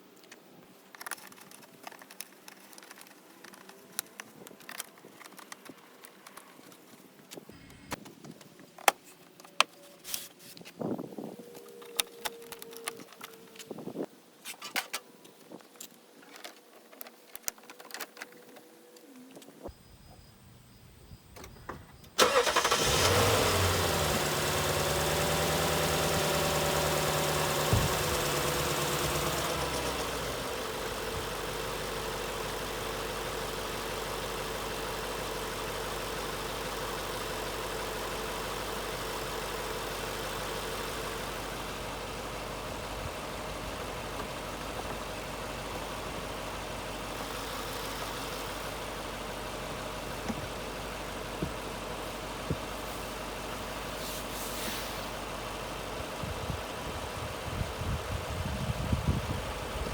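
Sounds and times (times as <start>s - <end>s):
car engine idling: 22.2s - 59.9s.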